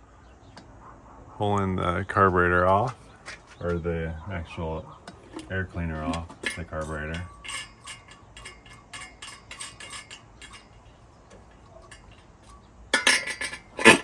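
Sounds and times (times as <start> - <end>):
metal parts clicking and rattling: 5.1 - 14.0
loud metal clanks: 5.2 - 14.0.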